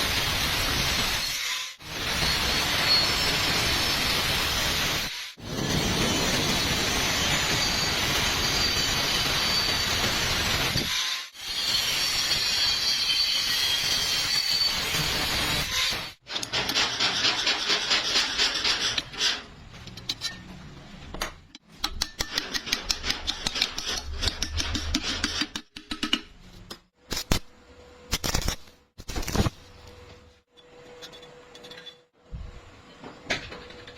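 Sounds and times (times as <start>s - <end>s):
welding arc crackling and hissing: 0.0s - 16.2s, 27.1s - 27.5s, 28.1s - 29.6s
scraping strokes on weld: 0.0s - 20.4s.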